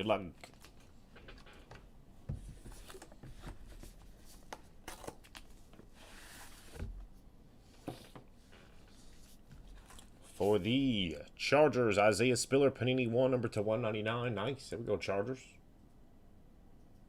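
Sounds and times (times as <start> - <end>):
card rustle: 2.5 - 6.8.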